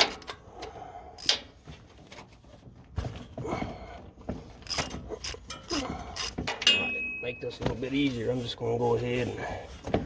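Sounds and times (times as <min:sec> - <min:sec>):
tools rubbing and scraping: 0:04.5 - 0:10.0
sharp metallic clicks and clinks: 0:04.6 - 0:07.5.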